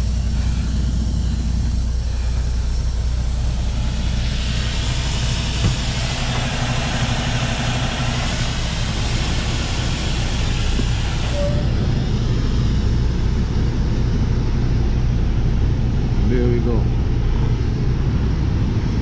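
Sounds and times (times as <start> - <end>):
air exhaust hissing: 0.0 - 19.0
diesel truck engine idling: 0.0 - 19.0
knock: 5.6 - 5.9.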